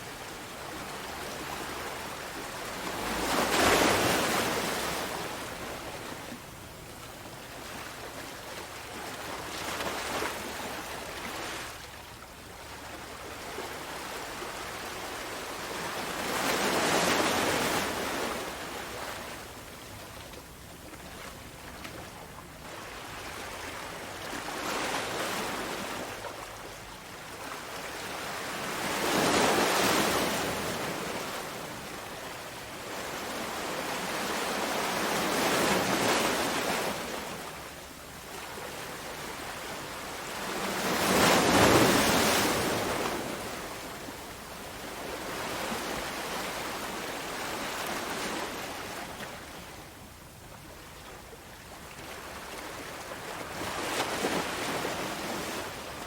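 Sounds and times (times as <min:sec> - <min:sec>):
ocean waves breaking: 0:00.8 - 0:06.0, 0:38.4 - 0:49.5.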